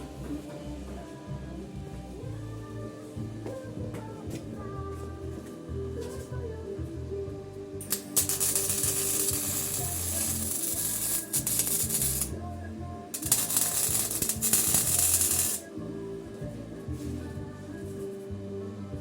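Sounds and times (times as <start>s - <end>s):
electric welding arc crackling: 7.8s - 12.4s, 13.1s - 15.7s.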